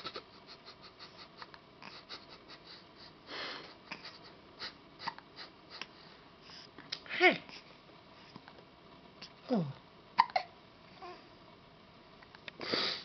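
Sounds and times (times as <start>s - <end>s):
soft handling clicks and rustles: 7.8s - 9.0s.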